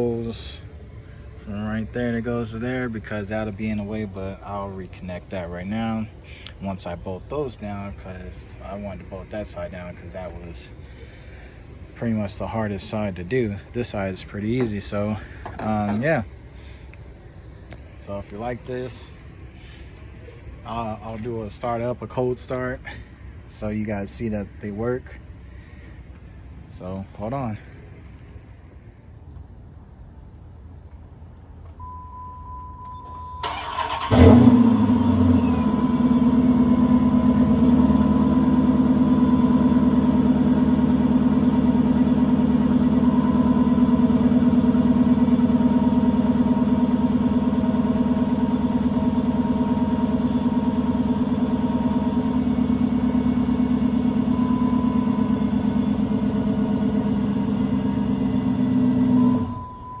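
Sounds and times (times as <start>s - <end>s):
starter motor cranking: 33.4s - 35.4s
car engine revving and idling: 33.4s - 59.9s.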